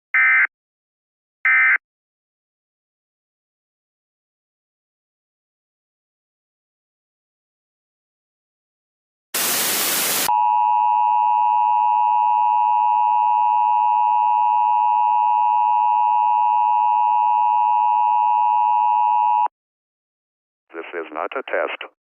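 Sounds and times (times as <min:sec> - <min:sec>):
burst of static: 0:09.4 - 0:10.3.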